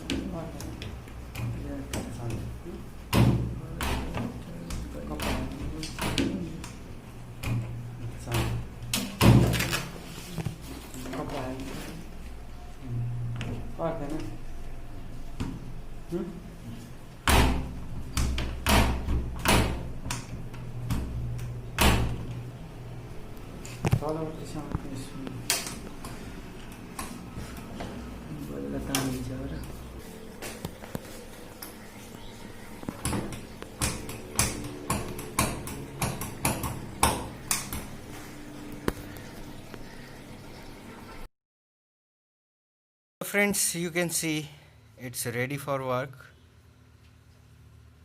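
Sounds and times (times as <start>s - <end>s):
washing machine door clunks: 3.1s - 6.4s, 8.3s - 9.7s, 17.2s - 22.4s, 32.8s - 38.0s.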